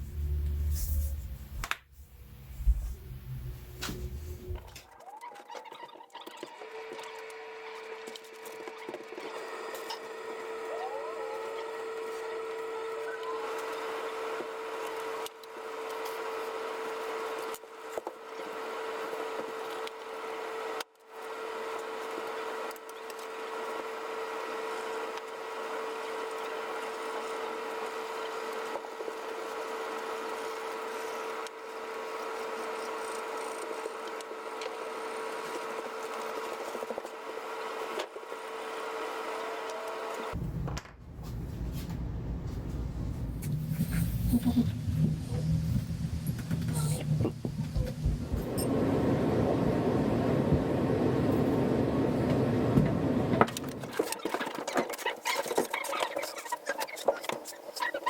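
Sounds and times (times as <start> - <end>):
deeper machine sound: 0.0 - 4.8, 40.3 - 53.8.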